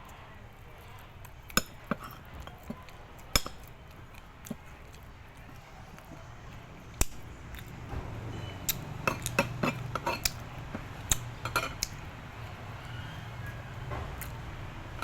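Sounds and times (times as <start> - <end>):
metal utensils clinking on pots: 1.5 - 3.8, 8.3 - 12.0.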